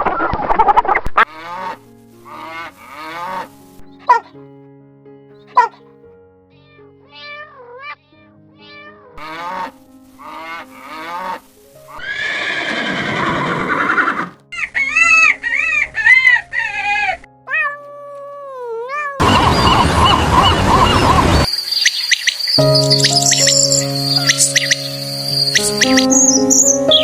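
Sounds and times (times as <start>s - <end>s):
background music: 1.3s - 27.0s
cat meowing: 6.5s - 11.4s, 14.8s - 20.2s
loud rushing noise: 19.2s - 21.5s.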